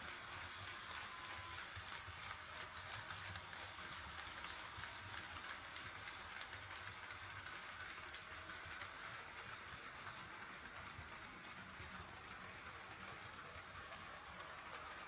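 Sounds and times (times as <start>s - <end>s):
model train rolling: 0.0s - 15.0s.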